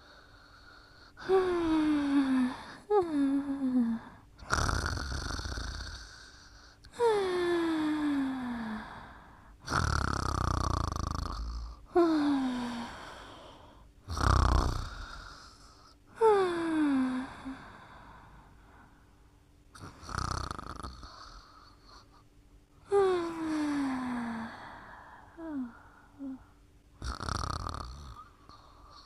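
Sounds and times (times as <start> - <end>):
rough snores: 4.4 - 6.5, 9.6 - 11.8, 14.1 - 15.7, 19.8 - 22.1, 27.0 - 29.0.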